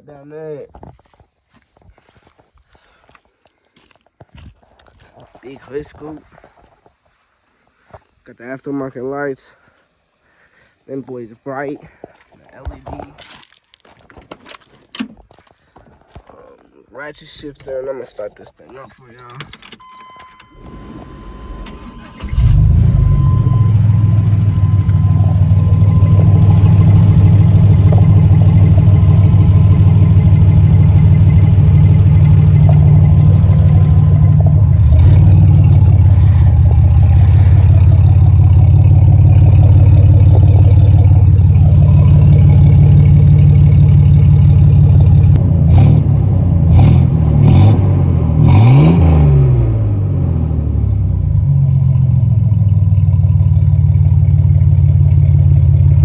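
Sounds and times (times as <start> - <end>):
loud car engine idling and revving: 20.4 - 56.0.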